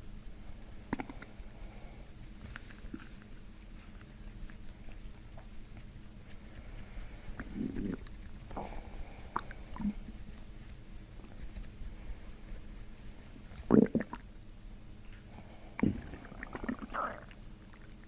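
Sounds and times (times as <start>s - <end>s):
stomach gurgling: 0.9s - 1.3s, 7.4s - 8.7s, 9.3s - 10.0s, 13.6s - 14.2s, 15.8s - 18.0s.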